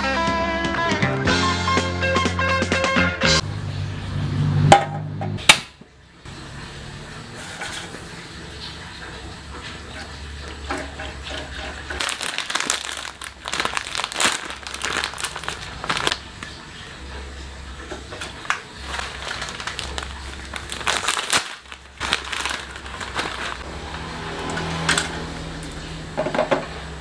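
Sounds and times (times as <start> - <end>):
plastic packaging crinkling: 11.9 - 16.9, 17.8 - 24.6
packets torn open: 12.0 - 16.6, 18.4 - 23.6.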